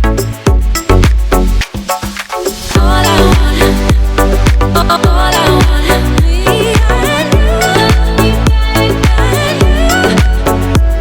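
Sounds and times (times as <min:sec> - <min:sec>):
fast dance music: 0:00.0 - 0:11.0.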